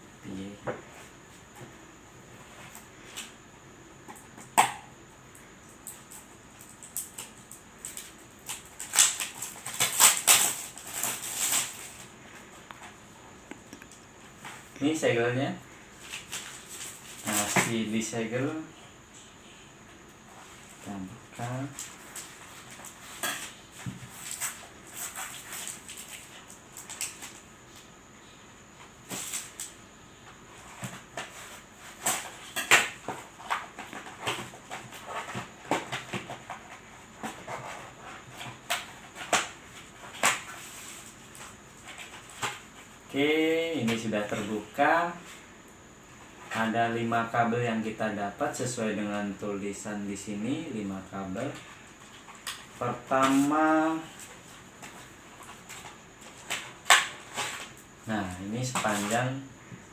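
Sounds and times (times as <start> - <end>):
packaging rustling and crinkling: 5.9 - 13.0, 16.0 - 17.8, 21.4 - 27.4
plastic packaging crinkling: 6.6 - 12.2.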